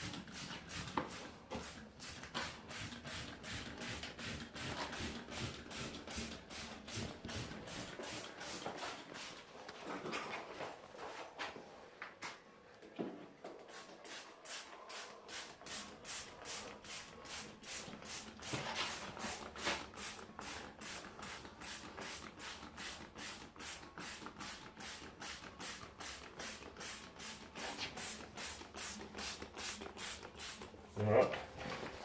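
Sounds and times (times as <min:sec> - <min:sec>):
trigger spray bottle spraying: 0:13.7 - 0:30.7.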